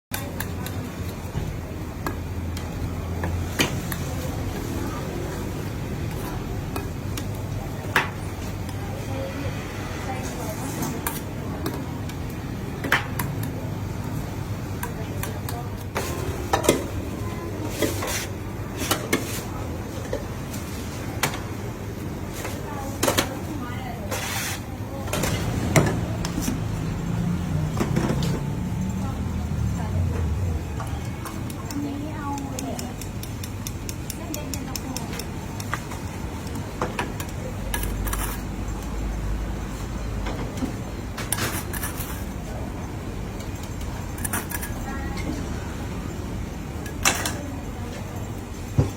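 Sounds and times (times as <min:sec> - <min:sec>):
metal utensils and bowls clinking: 0:44.1 - 0:45.4.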